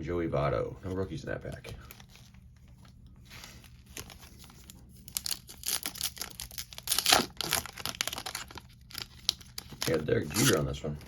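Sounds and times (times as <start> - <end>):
foil wrapper tearing and crinkling: 3.3 - 10.8.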